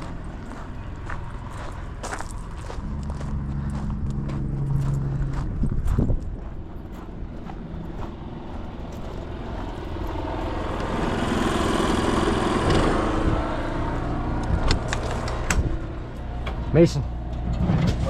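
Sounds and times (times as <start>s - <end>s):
rushing tyre noise: 0.0s - 18.0s
vehicle engine running: 0.0s - 18.0s.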